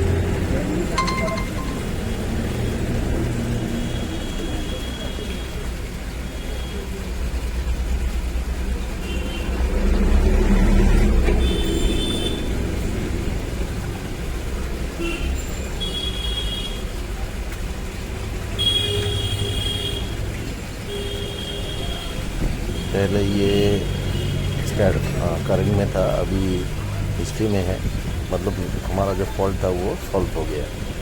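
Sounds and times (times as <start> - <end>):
brief high-pitched tones: 1.0 - 2.0.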